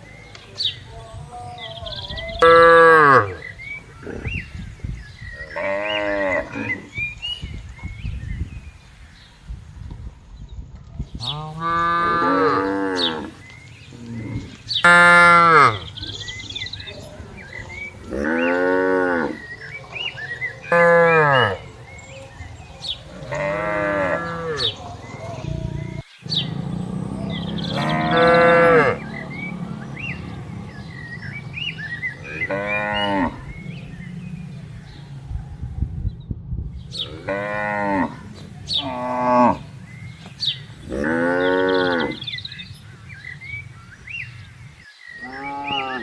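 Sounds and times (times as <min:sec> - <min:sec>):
cows mooing: 0:01.6 - 0:04.4, 0:05.4 - 0:07.0, 0:11.2 - 0:13.4, 0:14.0 - 0:16.1, 0:17.7 - 0:21.7, 0:23.0 - 0:35.1, 0:37.0 - 0:39.8, 0:40.8 - 0:42.3, 0:45.2 - 0:46.0.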